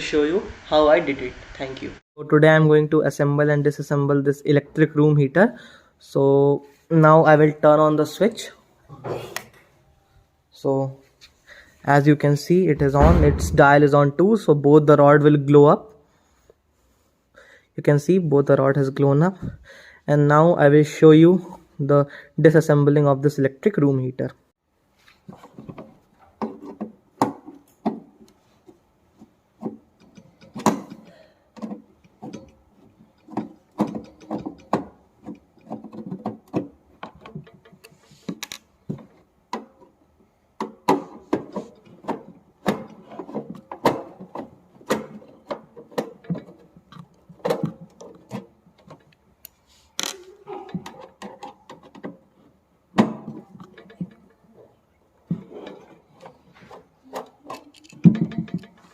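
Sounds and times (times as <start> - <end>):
heater parts clicking and clattering: 25.4 - 49.5, 55.3 - 58.9.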